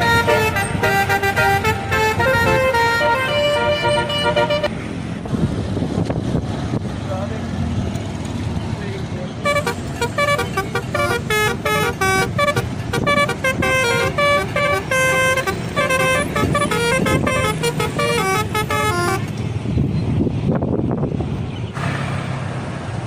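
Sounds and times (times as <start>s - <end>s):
musical bus air horn: 0.0s - 4.7s, 9.4s - 19.3s.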